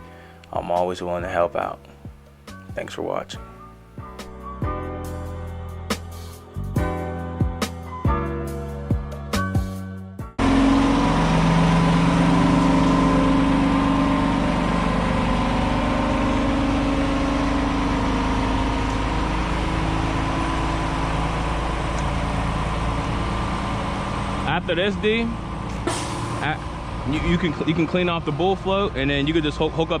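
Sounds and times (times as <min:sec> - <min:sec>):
music: 0:00.0 - 0:10.4
heavy engine running steadily: 0:10.4 - 0:30.0.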